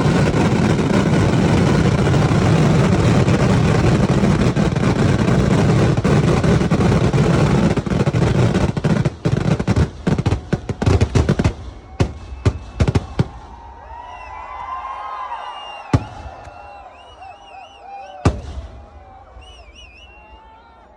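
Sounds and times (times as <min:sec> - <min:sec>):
firecracker bangs crackling: 0:00.0 - 0:13.4, 0:18.2 - 0:18.9.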